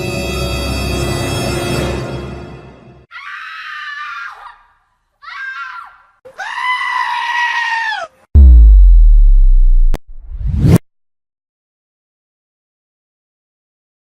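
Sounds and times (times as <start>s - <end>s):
loud high screams: 3.1s - 8.1s
deep bass blast: 8.4s - 10.8s.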